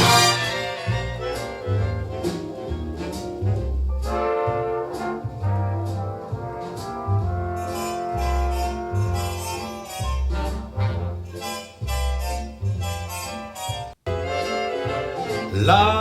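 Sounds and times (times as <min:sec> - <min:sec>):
trombone holding long notes: 0:00.0 - 0:02.2, 0:03.0 - 0:11.2, 0:14.1 - 0:16.0
upright bass line: 0:00.0 - 0:14.5, 0:15.4 - 0:16.0.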